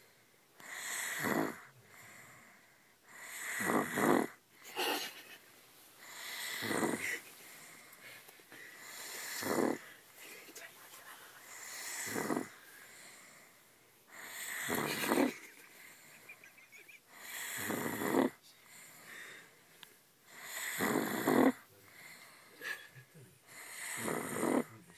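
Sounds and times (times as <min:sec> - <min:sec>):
quiet breathing: 0:00.0 - 0:24.9
person snoring: 0:00.6 - 0:02.5, 0:03.1 - 0:05.0, 0:06.0 - 0:07.9, 0:08.8 - 0:09.9, 0:11.5 - 0:13.4, 0:14.1 - 0:16.3, 0:17.1 - 0:18.4, 0:20.4 - 0:22.8, 0:23.5 - 0:24.8.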